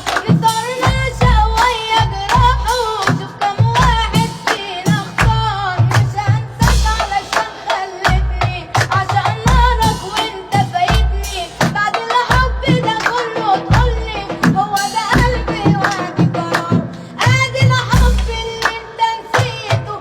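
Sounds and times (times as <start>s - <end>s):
child singing pop song: 0.0s - 20.0s.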